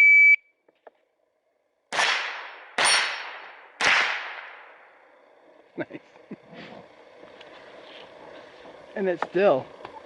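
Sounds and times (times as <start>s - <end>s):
rifle shots: 1.9s - 4.7s.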